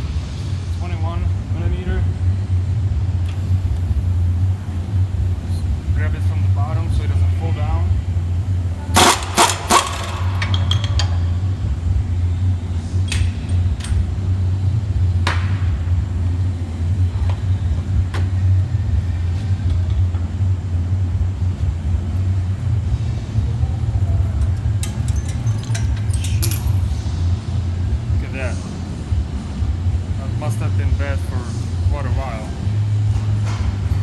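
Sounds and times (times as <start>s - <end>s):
low mechanical hum: 0.0s - 34.0s
metallic clinks and knocks of tools: 9.0s - 11.3s, 24.3s - 27.1s.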